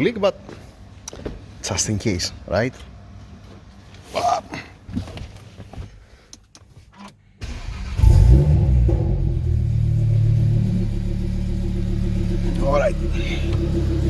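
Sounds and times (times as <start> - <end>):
car engine starting and idling: 7.4 - 14.0.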